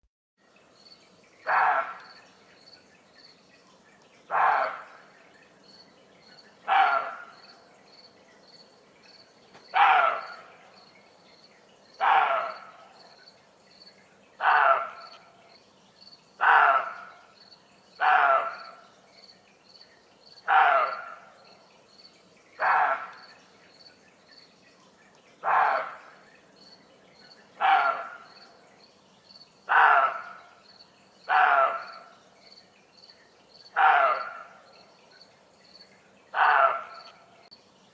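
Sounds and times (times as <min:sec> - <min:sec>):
deer alarm barks: 0:01.5 - 0:02.0, 0:04.3 - 0:04.9, 0:06.7 - 0:07.4, 0:09.7 - 0:10.4, 0:12.0 - 0:12.6, 0:14.4 - 0:15.0, 0:16.4 - 0:17.0, 0:18.0 - 0:18.6, 0:20.5 - 0:21.1, 0:22.6 - 0:23.2, 0:25.4 - 0:26.1, 0:27.6 - 0:28.2, 0:29.7 - 0:30.3, 0:31.3 - 0:31.9, 0:33.8 - 0:34.4, 0:36.4 - 0:37.1
crickets chirping: 0:25.5 - 0:37.2.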